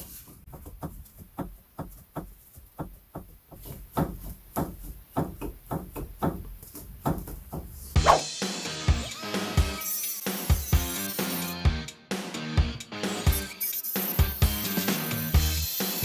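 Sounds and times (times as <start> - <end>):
music with drums: 8.0 - 16.0.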